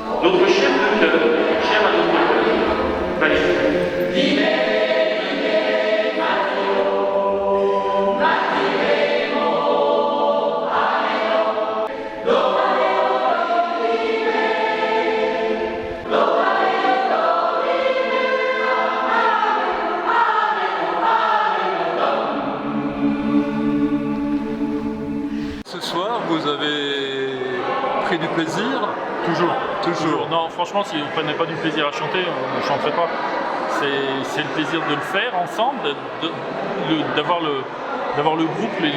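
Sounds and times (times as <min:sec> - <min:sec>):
choir singing sustained chords: 0:00.0 - 0:25.7.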